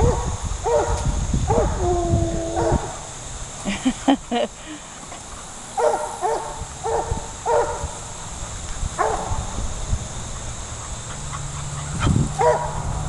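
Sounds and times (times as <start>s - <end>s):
dog barking: 0.0s - 1.8s, 2.6s - 3.0s, 5.8s - 8.0s, 9.0s - 9.4s, 11.6s - 12.8s.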